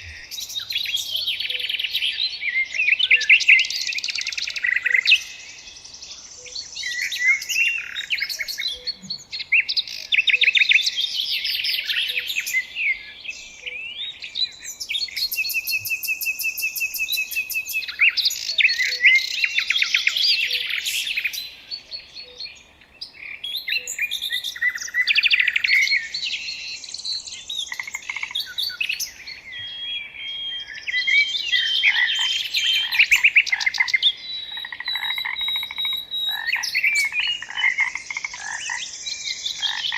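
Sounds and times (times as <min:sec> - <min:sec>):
songbirds singing: 0:00.0 - 0:39.9.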